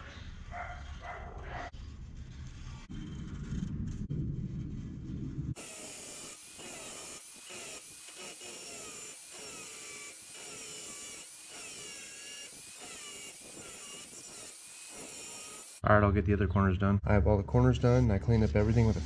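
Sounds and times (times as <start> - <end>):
power tool cutting steel sheet: 5.6 - 15.8.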